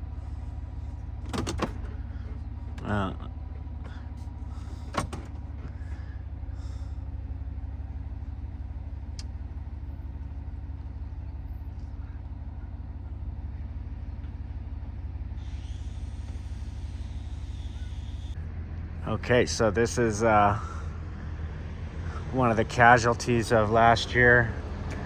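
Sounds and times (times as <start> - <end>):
vehicle engine running: 0.0 - 25.0
hiss: 15.4 - 18.3.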